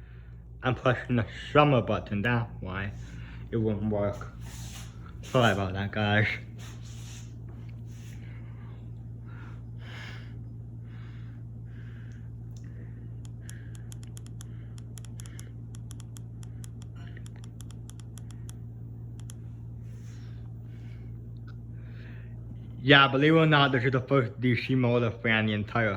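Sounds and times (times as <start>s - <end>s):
steady low hum: 0.0s - 25.9s
remote buttons clicking: 13.2s - 18.6s, 19.2s - 19.4s.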